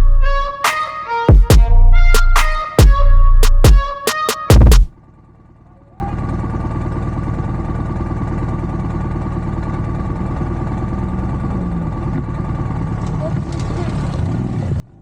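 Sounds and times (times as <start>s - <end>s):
motorcycle engine idling: 4.9s - 15.0s.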